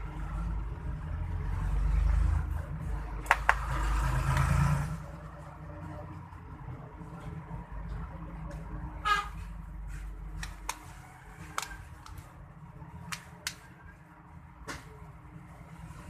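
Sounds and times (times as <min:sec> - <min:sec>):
vehicle horn honk: 0:09.0 - 0:09.4.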